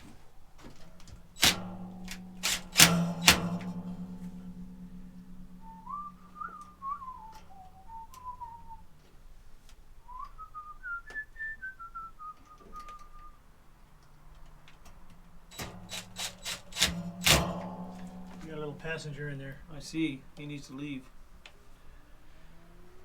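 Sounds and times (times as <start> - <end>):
person whistling a tune: 5.6 - 9.0, 10.0 - 13.4.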